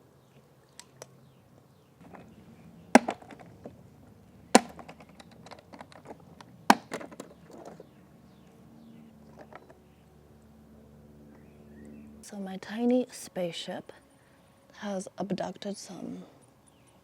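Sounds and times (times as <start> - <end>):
loud plastic knocks: 3.0 - 3.7, 4.6 - 7.8.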